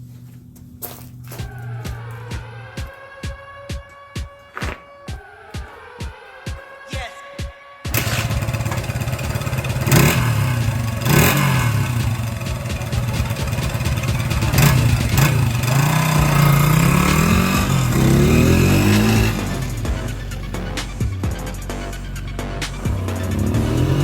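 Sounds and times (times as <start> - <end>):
motorcycle engine accelerating: 7.9 - 24.0.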